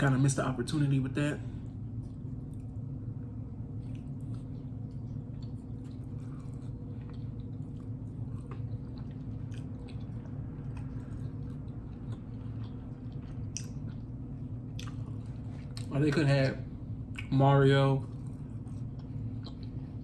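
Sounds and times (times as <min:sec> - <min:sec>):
steady low hum: 0:00.0 - 0:20.0
close chewing with mouth clicks: 0:03.6 - 0:16.2, 0:18.0 - 0:20.0.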